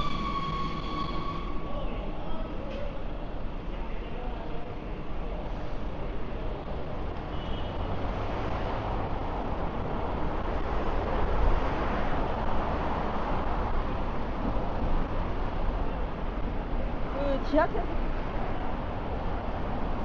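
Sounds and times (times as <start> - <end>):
city street traffic: 0.0 - 20.0.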